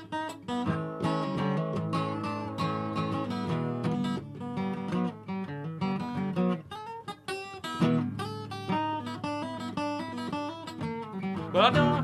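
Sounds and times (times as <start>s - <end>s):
acoustic guitar playing: 0.0s - 12.0s.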